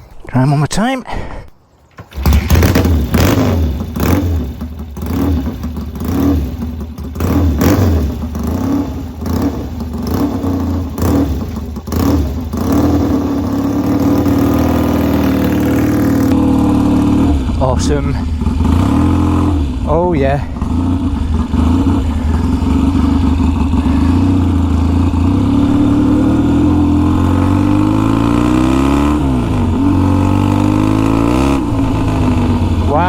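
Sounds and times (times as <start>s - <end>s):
motorcycle kick-start: 1.9s - 8.4s
motorcycle engine revving and idling: 2.0s - 33.0s.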